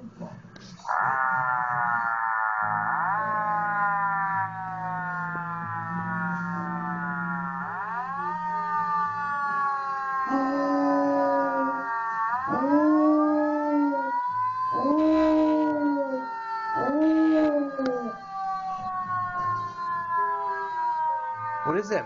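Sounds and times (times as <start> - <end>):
siren rising and falling: 0.9 - 22.0
puppy howling: 6.0 - 18.6.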